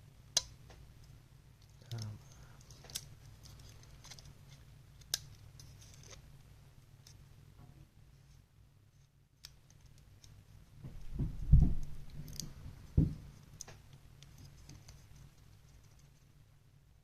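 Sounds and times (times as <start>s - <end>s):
dull knocks: 10.8s - 11.9s, 13.0s - 13.2s.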